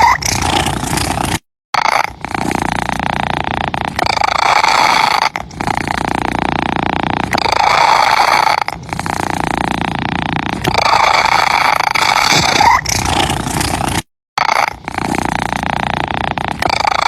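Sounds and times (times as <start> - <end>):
cat purring: 0.0 - 17.0.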